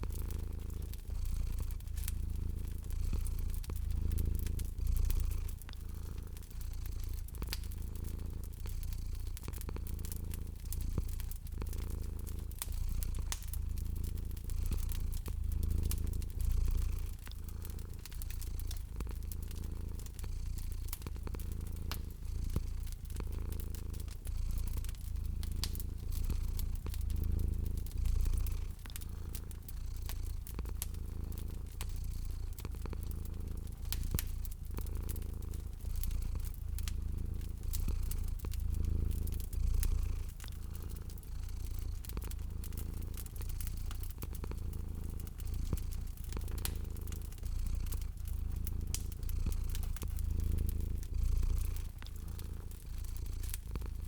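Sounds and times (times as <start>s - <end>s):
cat purring: 0.0s - 54.0s
wood fire crackling and popping: 0.0s - 54.0s.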